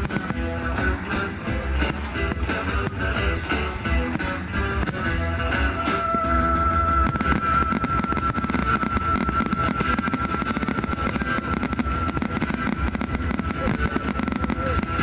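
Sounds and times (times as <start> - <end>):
fireworks cracks and bangs: 0.0 - 6.4, 7.0 - 15.0
low rumble: 0.0 - 15.0
steady high tone: 5.1 - 14.9.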